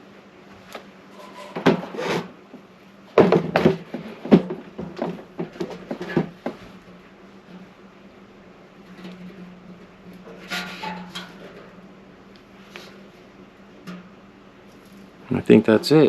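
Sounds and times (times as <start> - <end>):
steady low hum: 0.0 - 16.0
filler spreader scraping metal: 1.1 - 2.3, 8.8 - 11.9.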